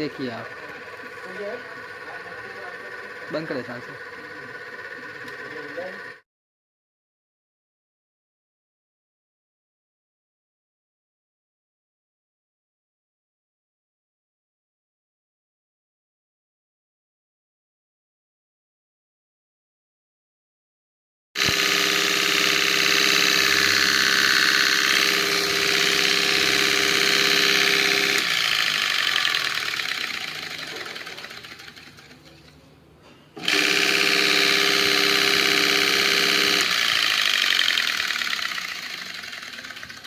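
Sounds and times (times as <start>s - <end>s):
electric motor hum: 0.0s - 6.2s, 21.4s - 32.6s, 33.4s - 40.0s
flour mill whirring: 0.0s - 6.2s, 21.4s - 32.6s, 33.4s - 40.0s.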